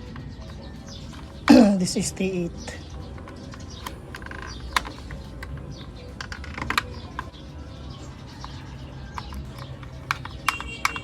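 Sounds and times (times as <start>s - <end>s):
hand tools clicking on plastic: 2.8s - 7.4s, 8.3s - 11.0s.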